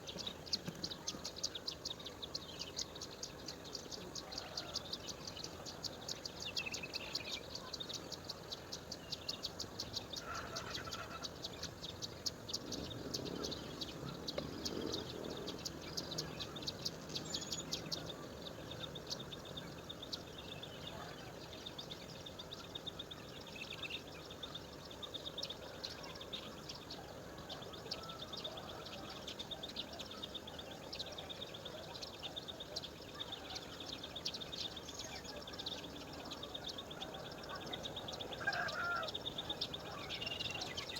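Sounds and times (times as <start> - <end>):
insects chirping and ticking: 0.0 - 20.9
loud bird chirps: 6.6 - 40.9.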